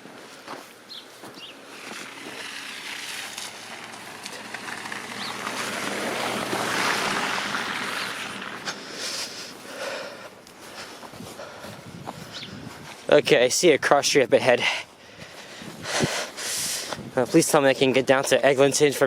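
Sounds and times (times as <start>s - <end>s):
vehicle driving through slush: 1.5s - 9.8s.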